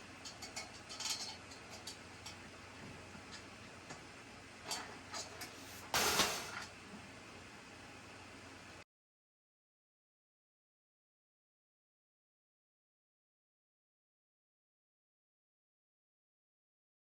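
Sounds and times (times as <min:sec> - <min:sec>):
scraping burst: 0:05.6 - 0:06.6.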